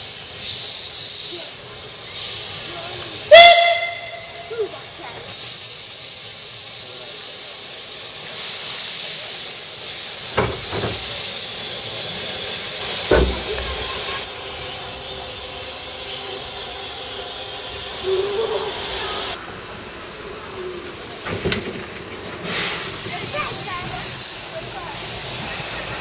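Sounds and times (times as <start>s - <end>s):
steam locomotive venting steam: 0.0s - 26.0s
short knocks: 10.4s - 11.1s, 13.1s - 13.9s.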